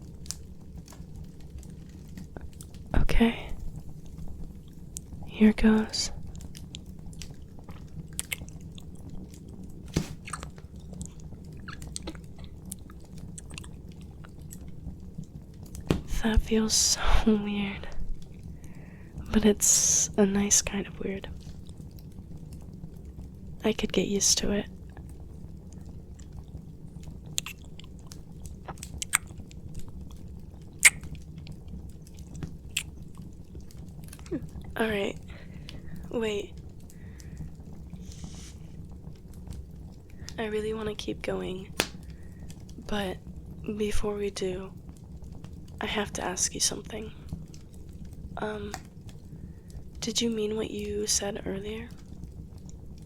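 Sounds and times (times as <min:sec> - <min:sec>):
steady low hum: 0:00.0 - 0:53.0
wet kissing mouth sounds: 0:10.0 - 0:10.5, 0:27.4 - 0:27.6, 0:28.8 - 0:29.3, 0:30.8 - 0:31.1.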